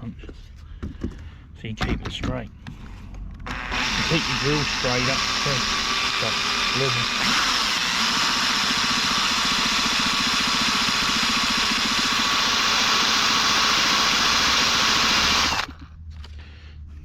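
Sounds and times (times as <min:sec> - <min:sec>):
electric drill boring metal: 0:03.4 - 0:15.9.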